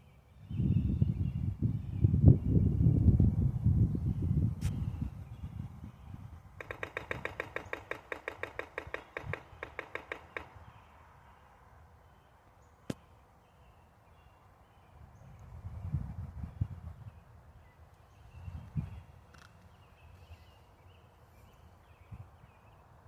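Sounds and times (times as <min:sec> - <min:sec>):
woodpecker pecking: 0:06.6 - 0:11.0.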